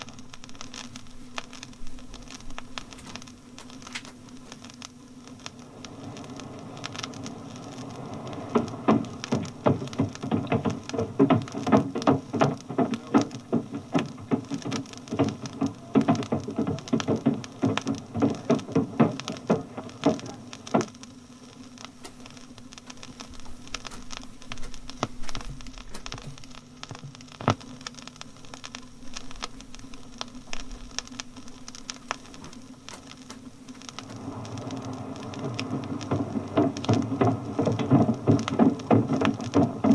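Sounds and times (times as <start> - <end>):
low engine hum: 5.6 - 14.5
footsteps boarding a bus: 5.9 - 20.9, 32.9 - 39.9.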